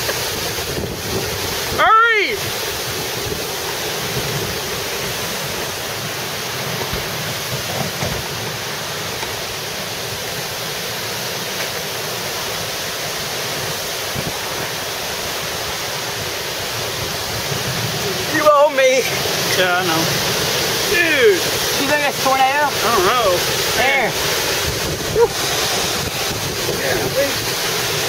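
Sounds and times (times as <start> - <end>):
wind buffeting microphone: 0.0 - 1.8, 14.1 - 14.7, 22.7 - 28.0
wind and hard rain: 0.0 - 28.0.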